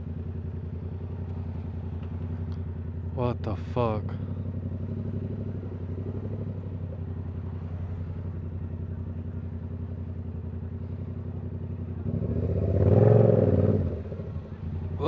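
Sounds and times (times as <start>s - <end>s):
motorcycle engine idling: 0.0s - 12.8s, 13.4s - 15.0s.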